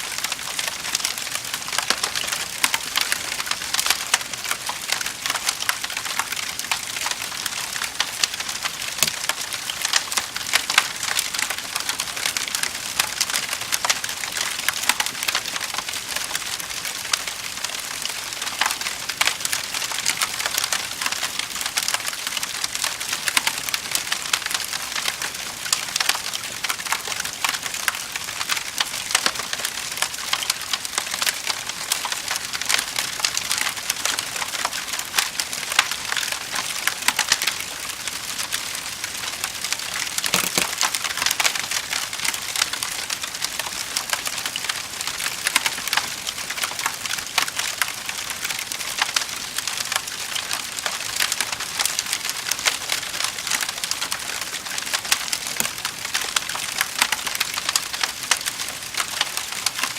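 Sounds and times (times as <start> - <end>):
wood fire crackling and popping: 1.8 - 12.6, 33.3 - 42.7, 53.4 - 59.5.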